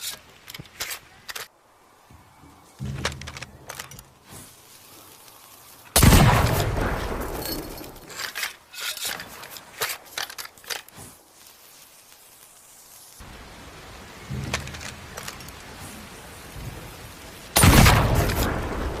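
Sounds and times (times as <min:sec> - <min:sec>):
gun firing blast: 0:06.0 - 0:07.9, 0:17.6 - 0:19.0.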